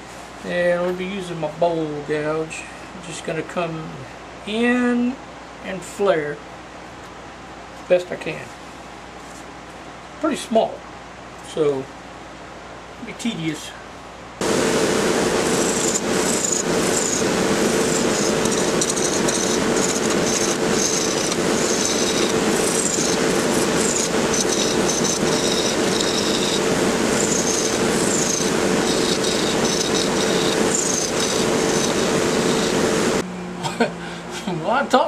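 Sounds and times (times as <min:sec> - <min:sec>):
lathe motor hum: 0:14.4 - 0:33.2
wood cutting hiss: 0:14.4 - 0:33.2
high squeaks from tool: 0:15.6 - 0:32.8.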